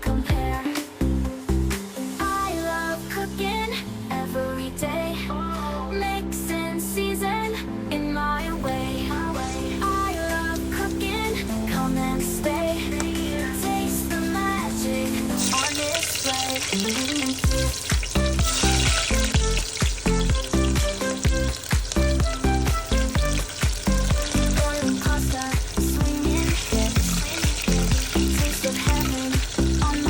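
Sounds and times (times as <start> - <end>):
background music with bass beat: 0.0 - 4.1, 17.4 - 30.0
food sizzling in a pan: 8.6 - 30.0.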